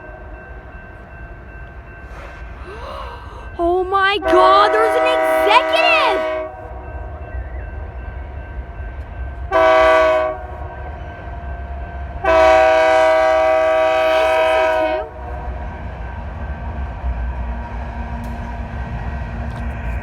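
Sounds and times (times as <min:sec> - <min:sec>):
passing train rumble: 0:00.0 - 0:20.0
locomotive horn blasts: 0:04.2 - 0:06.6, 0:09.5 - 0:10.5, 0:12.2 - 0:15.2.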